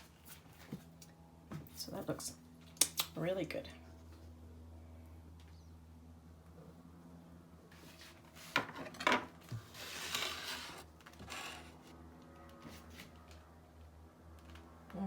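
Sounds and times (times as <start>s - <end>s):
scraping and rubbing: 9.6s - 12.0s.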